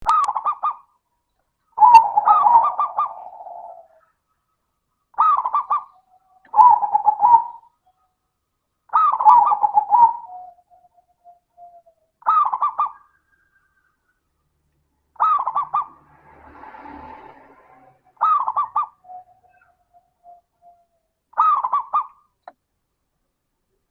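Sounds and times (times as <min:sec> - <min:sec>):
dove cooing: 0:01.8 - 0:04.1, 0:05.2 - 0:07.7, 0:08.9 - 0:13.1, 0:15.2 - 0:16.0, 0:18.2 - 0:20.8, 0:21.4 - 0:22.1.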